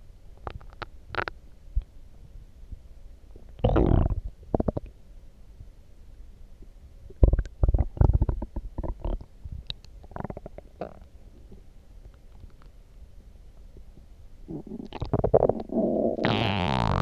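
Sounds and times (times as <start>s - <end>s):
stomach gurgling and rumbling: 3.6s - 4.9s, 7.1s - 11.7s, 13.7s - 17.0s.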